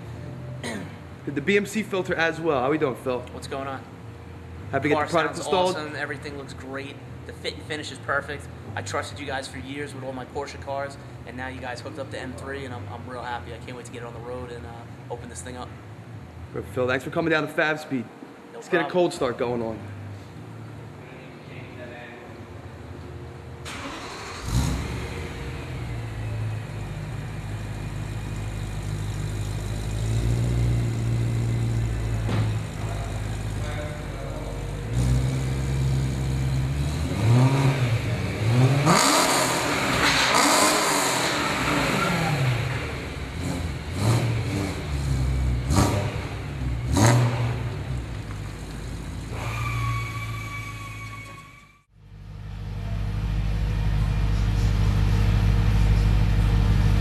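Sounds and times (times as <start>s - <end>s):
car engine starting and idling: 22.8s - 51.1s, 51.9s - 57.0s
car engine revving: 23.7s - 50.6s, 52.0s - 57.0s.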